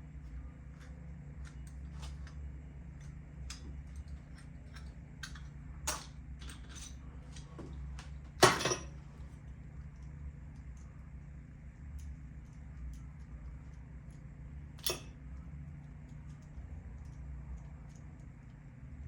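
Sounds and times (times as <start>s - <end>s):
steady low hum: 0.0s - 19.0s
metal tools clicking and clinking: 3.0s - 7.5s, 8.4s - 9.0s, 14.8s - 15.2s.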